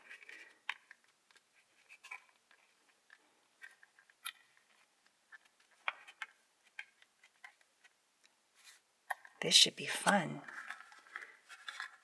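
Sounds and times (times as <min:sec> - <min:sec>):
plastic tray crinkling: 0:10.0 - 0:12.0.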